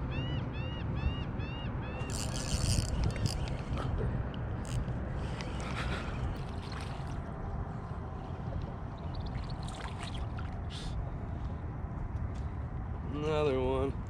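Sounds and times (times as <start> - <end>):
steady low rumble: 1.2 - 13.2
water splashing and trickling: 4.6 - 11.0.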